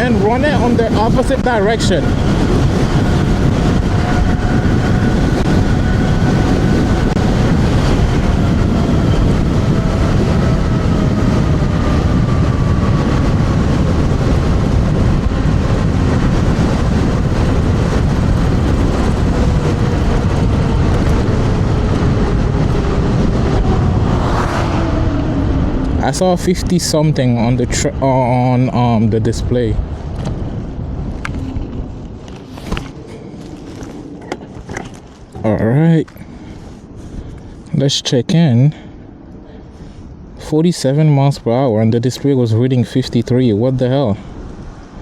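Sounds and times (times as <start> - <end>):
wind rushing on microphone: 0.0 - 45.0.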